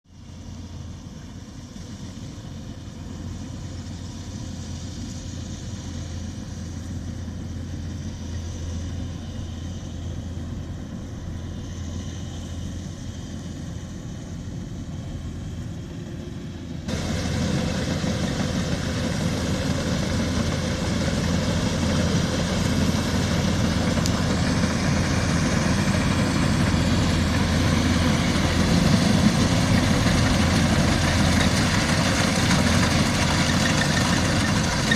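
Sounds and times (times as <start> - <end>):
harvester engine humming: 0.2 - 34.9.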